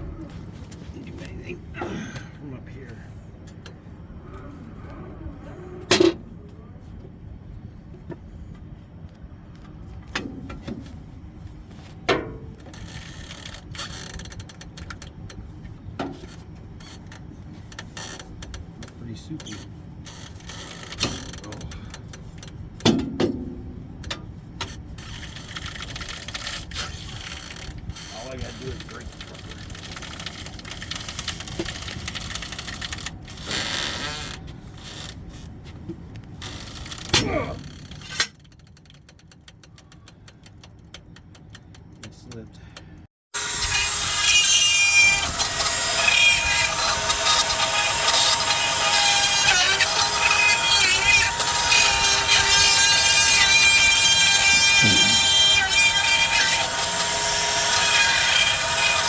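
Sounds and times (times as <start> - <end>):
rapid clicking and scraping: 24.6 - 33.7, 43.6 - 59.0
loud metal clank: 49.9 - 59.0.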